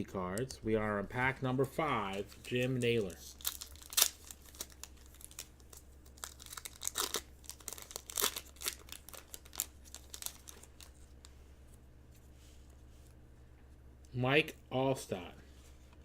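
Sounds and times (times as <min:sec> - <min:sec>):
wrapper tearing and crinkling: 0:02.4 - 0:11.0.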